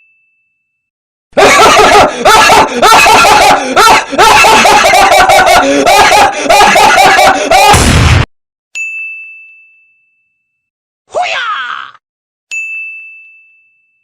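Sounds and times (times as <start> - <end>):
high-pitched laugh: 1.4 - 7.8.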